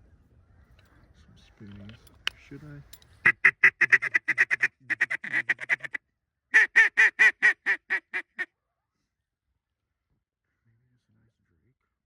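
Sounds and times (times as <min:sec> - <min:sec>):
duck quacking: 0:03.2 - 0:06.0, 0:06.6 - 0:08.5.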